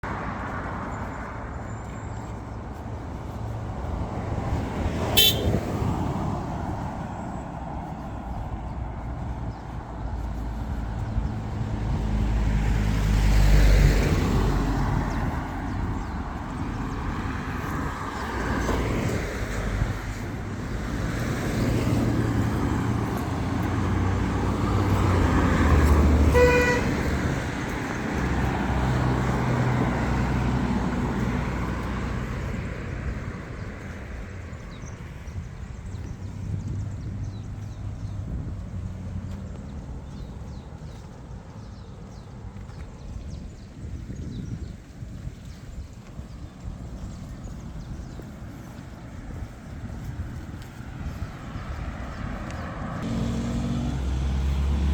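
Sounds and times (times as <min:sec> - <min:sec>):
road traffic engine rumble: 0:00.0 - 0:54.9
short car horn toot: 0:05.1 - 0:05.6, 0:26.3 - 0:26.9.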